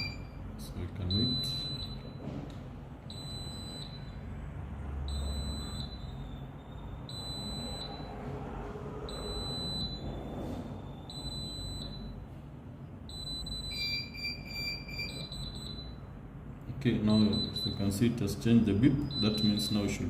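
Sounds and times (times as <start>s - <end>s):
alarm buzzer beeps: 0.0s - 2.3s, 3.1s - 4.3s, 4.9s - 8.2s, 9.1s - 12.3s, 13.1s - 16.2s, 17.1s - 20.0s.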